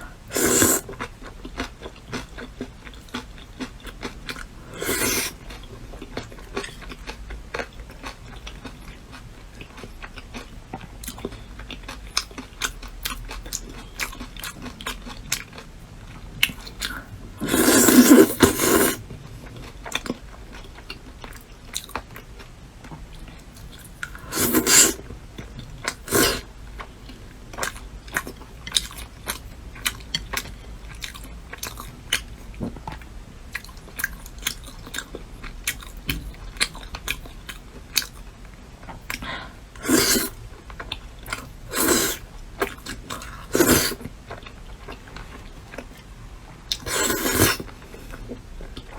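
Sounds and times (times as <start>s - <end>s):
chewing and biting food: 0.4s - 32.3s.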